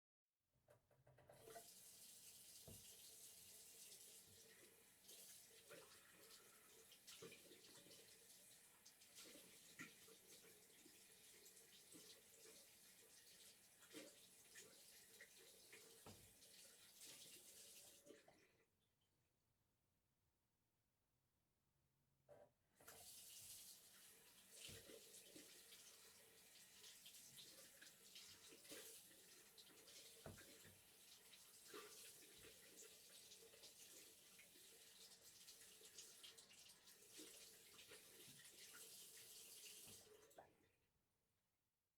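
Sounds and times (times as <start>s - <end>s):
tap running into sink: 2.6s - 3.1s, 16.0s - 16.4s, 30.1s - 30.8s.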